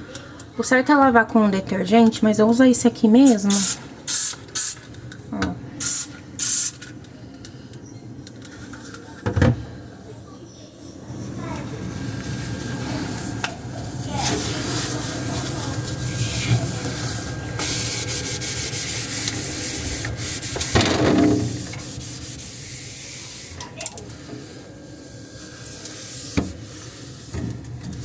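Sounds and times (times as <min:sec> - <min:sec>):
hand scrubbing refrigerator inside: 0:02.7 - 0:04.8, 0:11.0 - 0:28.0.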